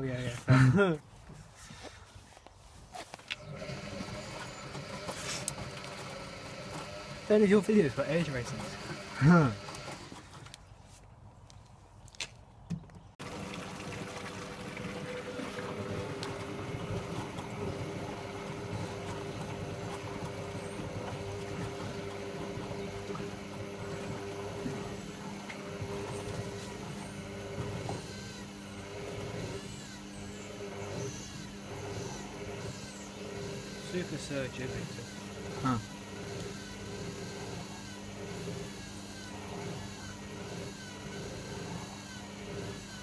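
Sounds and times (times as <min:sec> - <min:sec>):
washing machine motor hum: 0:03.4 - 0:10.2, 0:13.2 - 0:43.0
water sloshing: 0:13.2 - 0:28.1.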